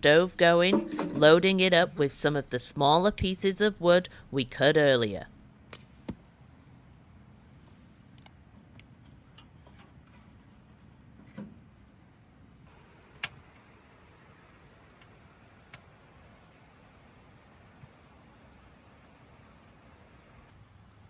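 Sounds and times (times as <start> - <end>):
wood knocking in stove: 0.7 - 1.3.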